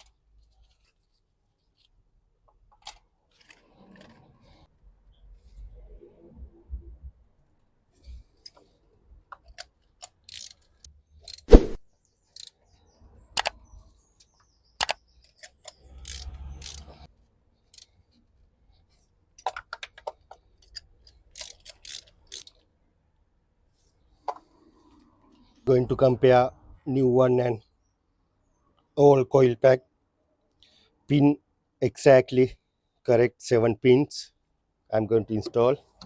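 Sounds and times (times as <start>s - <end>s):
metal parts and tools clinking: 0.0s - 0.2s, 9.3s - 11.5s, 14.1s - 17.1s, 19.4s - 22.6s.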